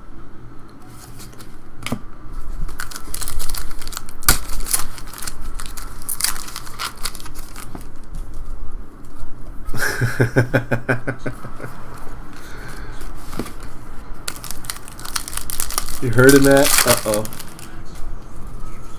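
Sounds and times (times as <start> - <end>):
card pack wrapper tearing: 1.1 - 8.1, 13.0 - 18.0.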